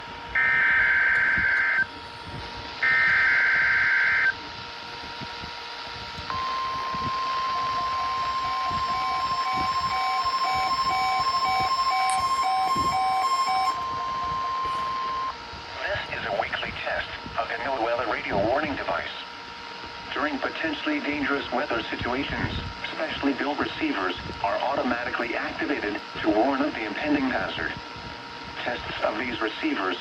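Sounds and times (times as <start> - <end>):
harsh buzzing data bursts: 0.0 - 30.0
steady warning alarm tone: 0.0 - 30.0
faint pulsing beep: 2.8 - 4.4, 6.3 - 15.4.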